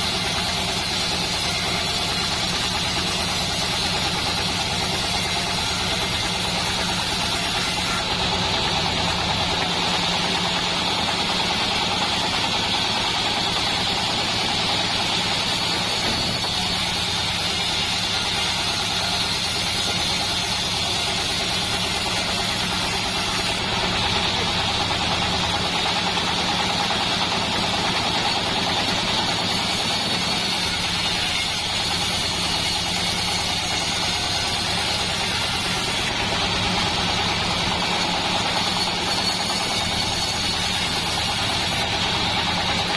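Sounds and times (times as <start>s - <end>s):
bandsaw mill engine drone: 0.0s - 42.9s.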